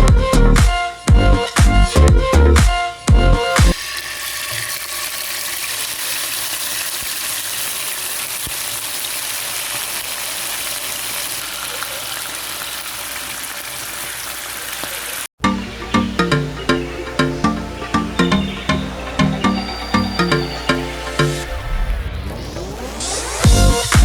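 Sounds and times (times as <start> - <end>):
chicken sizzling in hot oil: 3.8 - 15.3.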